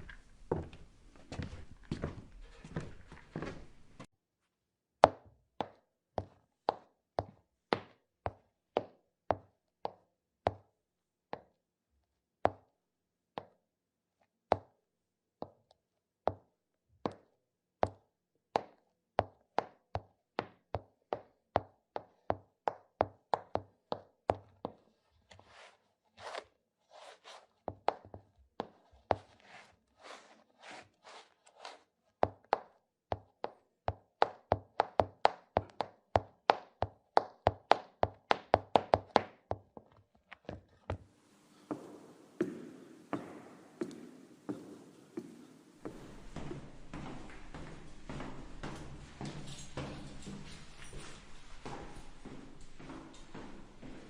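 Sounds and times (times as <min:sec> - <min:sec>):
sharp footsteps on hard surface: 0:00.0 - 0:04.1, 0:39.8 - 0:54.0
soft scuffing footsteps: 0:00.0 - 0:04.1, 0:39.8 - 0:54.0.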